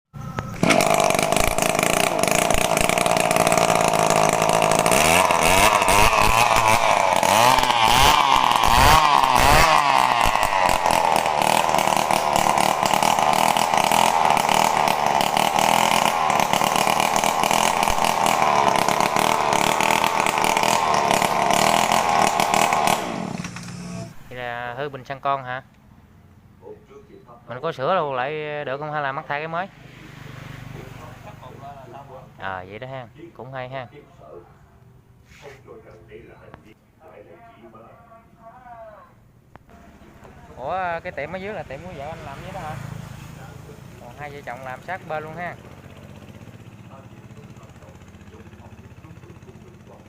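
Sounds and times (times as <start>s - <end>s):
brush cutter engine revving: 0.2s - 24.4s, 39.7s - 50.0s.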